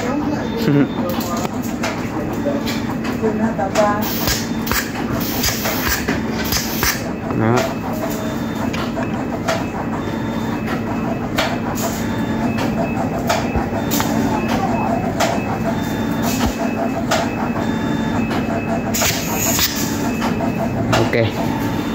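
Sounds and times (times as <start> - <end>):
pneumatic cylinder hiss and clack: 4.1 - 7.0, 19.0 - 19.8.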